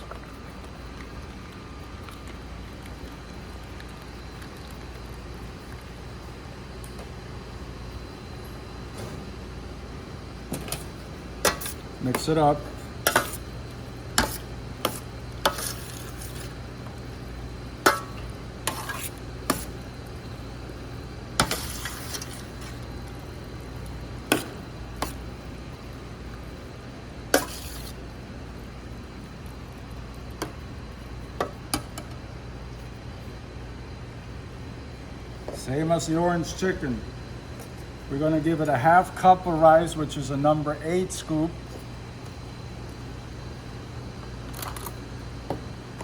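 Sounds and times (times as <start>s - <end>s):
steady low hum: 0.0s - 46.0s
utensil scraping pan: 14.2s - 16.5s, 18.6s - 19.7s, 21.4s - 22.4s, 27.3s - 28.0s.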